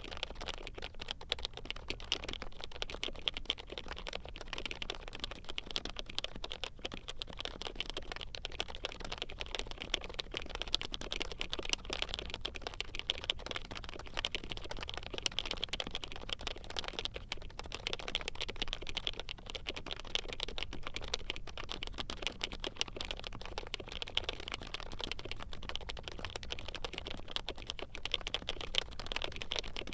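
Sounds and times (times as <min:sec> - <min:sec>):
fast keyboard typing: 0:00.0 - 0:29.9.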